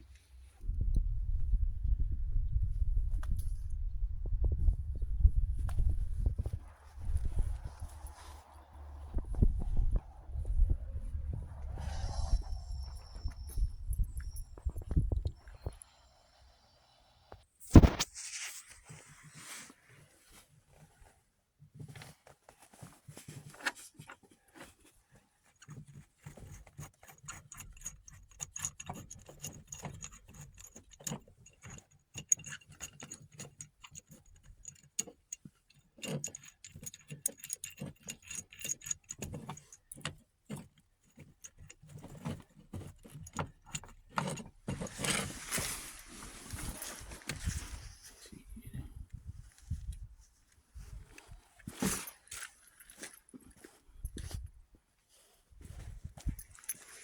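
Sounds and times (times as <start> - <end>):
small metal parts rattling: 25.6 - 45.3.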